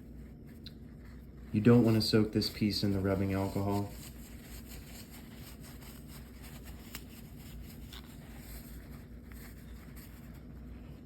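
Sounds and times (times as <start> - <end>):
low steady hum: 0.0 - 11.0
paper towel rubbing: 0.0 - 11.0.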